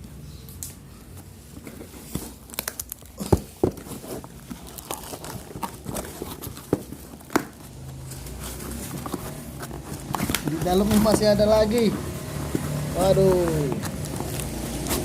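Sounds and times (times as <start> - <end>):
cardboard rustling and tearing: 1.4 - 15.0.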